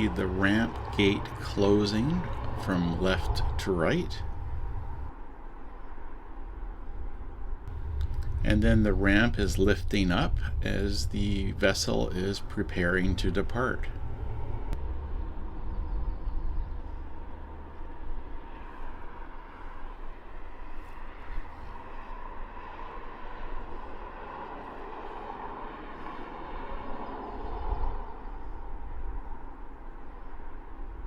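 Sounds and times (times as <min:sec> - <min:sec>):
engine mechanical hum: 0:00.0 - 0:31.0.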